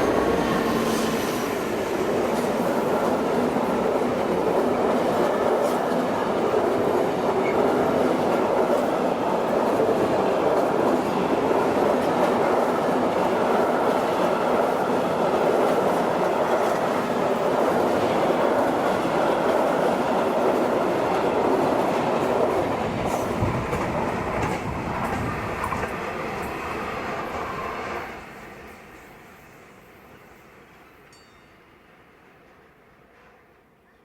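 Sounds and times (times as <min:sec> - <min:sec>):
freight train wheels clattering on rails: 0:00.0 - 0:29.2.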